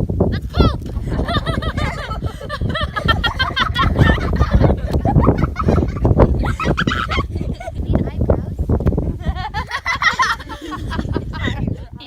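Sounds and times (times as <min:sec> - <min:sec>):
low rumble: 0:00.0 - 0:11.9
children squealing and giggling: 0:00.3 - 0:08.1.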